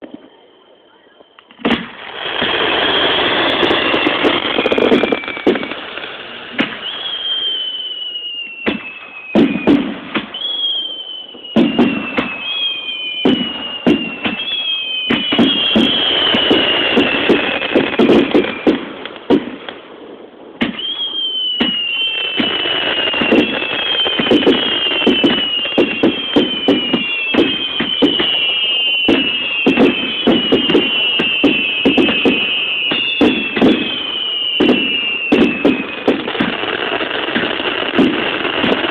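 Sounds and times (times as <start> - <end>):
falling firework whistles: 0.0 - 19.8, 20.6 - 38.9
firework bangs and crackles: 0.0 - 38.9.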